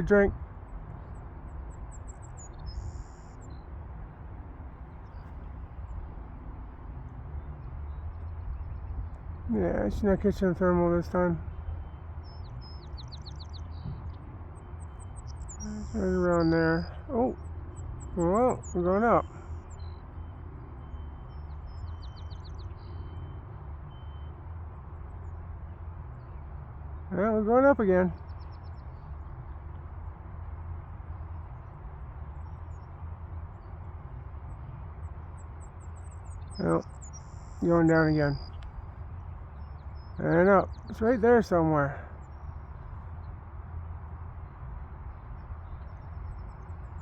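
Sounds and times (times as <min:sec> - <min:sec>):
wind rumbling on microphone: 0:00.0 - 0:47.0
faint high chirps: 0:04.8 - 0:29.8.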